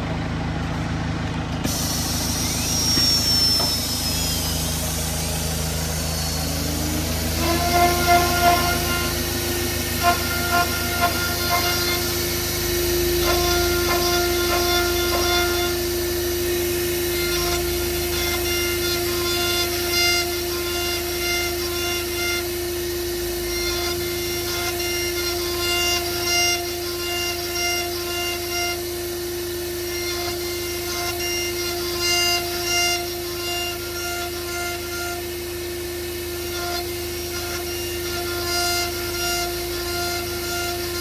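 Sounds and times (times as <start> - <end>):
cnc router spindle whine: 0.0 - 41.0
short higher machine tones: 1.6 - 22.5.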